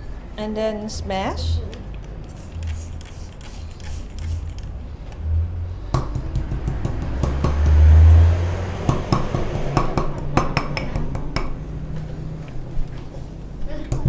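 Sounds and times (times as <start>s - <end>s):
low rumble: 4.6s - 10.4s
pestle knocking in a mortar: 8.9s - 11.6s.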